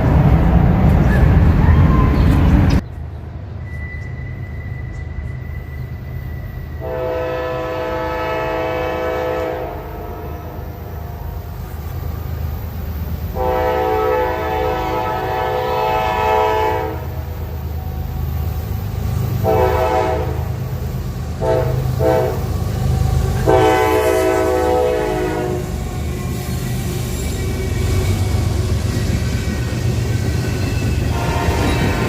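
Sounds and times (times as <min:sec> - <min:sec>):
train rumble: 0:00.0 - 0:32.0
locomotive air horn blasts: 0:06.8 - 0:11.5, 0:13.3 - 0:17.3, 0:19.4 - 0:22.6, 0:23.2 - 0:25.8, 0:31.1 - 0:32.0.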